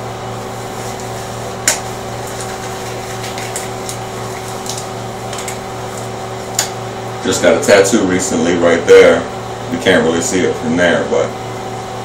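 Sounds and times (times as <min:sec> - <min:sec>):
steady mechanical hum: 0:00.0 - 0:12.0.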